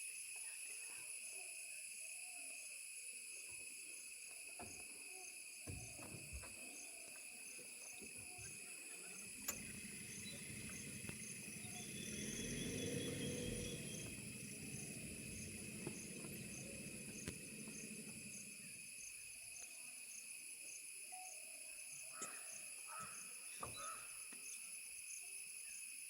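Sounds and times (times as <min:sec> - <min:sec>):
crickets chirping: 0:00.0 - 0:26.0
low rumble: 0:09.3 - 0:18.8.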